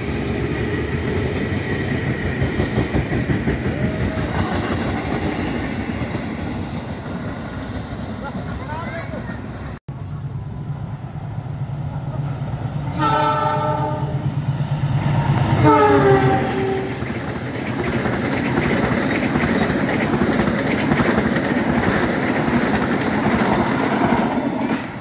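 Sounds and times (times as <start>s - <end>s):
train rumble: 0.0s - 25.0s
wheels clattering over rails: 0.4s - 9.8s, 16.1s - 25.0s
train horn: 12.9s - 14.3s, 15.5s - 17.0s.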